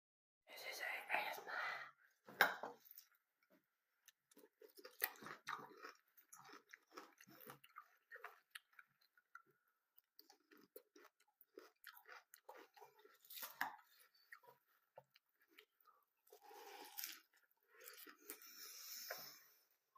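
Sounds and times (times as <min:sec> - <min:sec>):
person chewing cornflakes: 0:04.0 - 0:19.2.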